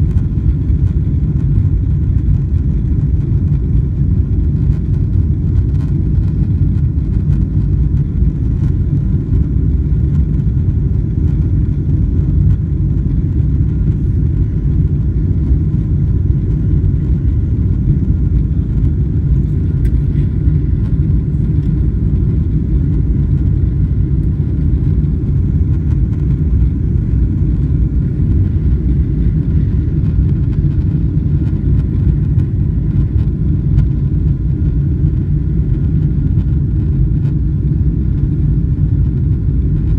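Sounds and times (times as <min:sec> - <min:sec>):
airliner cabin low rumble: 0:00.0 - 0:39.9.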